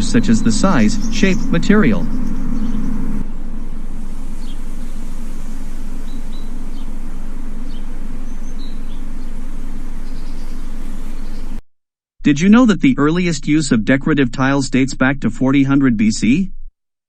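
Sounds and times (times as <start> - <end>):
low mechanical hum: 0.0 - 11.6.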